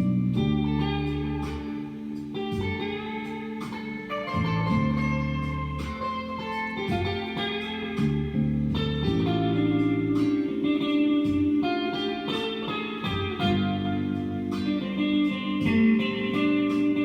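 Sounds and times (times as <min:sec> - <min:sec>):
bass line: 0:00.0 - 0:03.1, 0:04.2 - 0:11.7, 0:13.1 - 0:14.8
guitar background music: 0:00.0 - 0:17.0.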